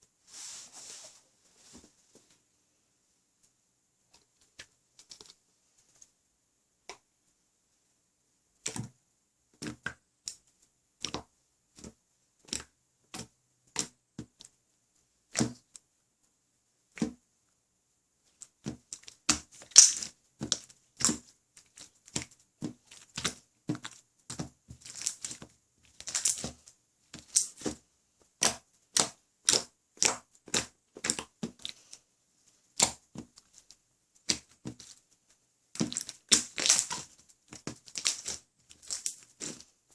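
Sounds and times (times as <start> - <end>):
slime popping and crackling: 18.8 - 27.8, 28.4 - 31.9, 32.7 - 35.0, 35.7 - 39.7.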